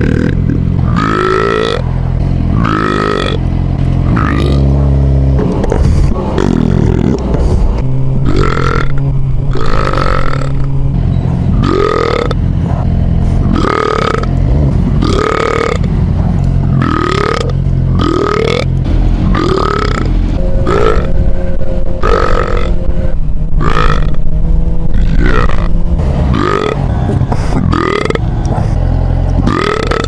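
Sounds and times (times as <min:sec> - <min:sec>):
man belching: 0:00.0 - 0:01.8, 0:02.5 - 0:03.4, 0:04.1 - 0:04.7, 0:06.3 - 0:07.4, 0:08.2 - 0:10.7, 0:11.6 - 0:12.4, 0:13.4 - 0:14.4, 0:15.0 - 0:15.9, 0:16.8 - 0:21.2, 0:22.0 - 0:22.8, 0:23.6 - 0:24.2, 0:24.9 - 0:25.7, 0:27.6 - 0:28.2, 0:29.4 - 0:30.0.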